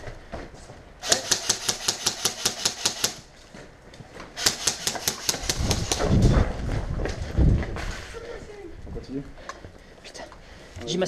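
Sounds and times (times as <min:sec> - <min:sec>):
airsoft gun rapid firing: 0:01.0 - 0:03.3, 0:04.4 - 0:06.1.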